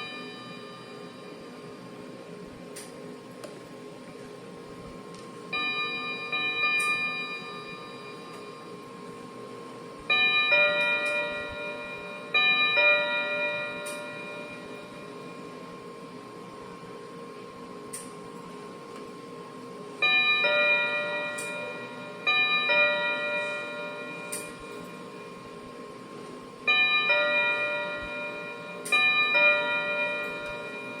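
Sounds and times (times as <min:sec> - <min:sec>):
electronic doorbell chime: 0:00.0 - 0:01.4, 0:05.6 - 0:08.8, 0:10.1 - 0:15.4, 0:20.0 - 0:25.4, 0:26.7 - 0:31.0.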